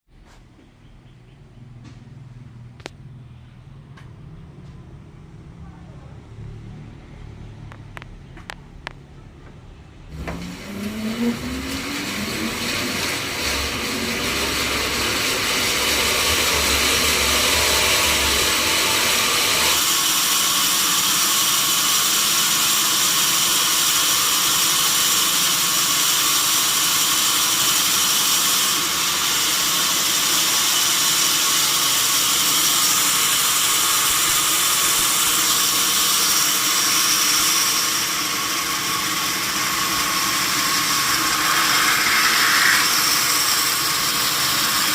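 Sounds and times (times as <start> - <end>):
sawmill saw cutting log: 10.1 - 44.9.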